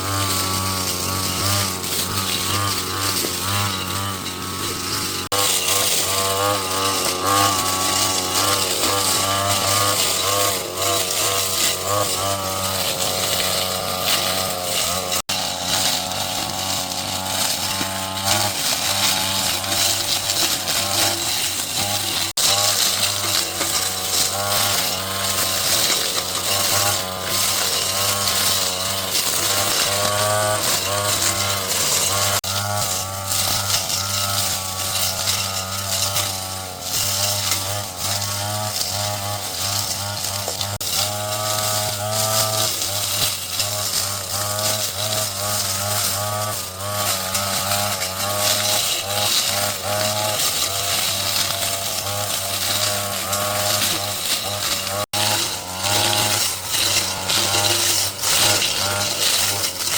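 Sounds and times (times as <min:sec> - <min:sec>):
garden power tool engine revving: 0:00.0 - 0:59.9.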